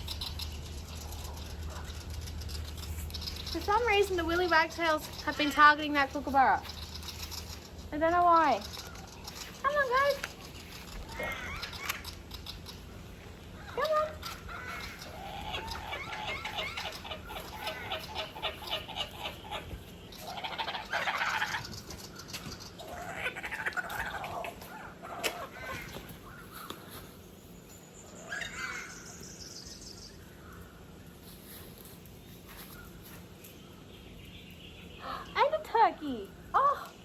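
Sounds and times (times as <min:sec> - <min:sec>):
kookaburra laughing calls: 0:10.9 - 0:12.9, 0:13.6 - 0:22.0, 0:22.8 - 0:26.0, 0:28.2 - 0:29.2.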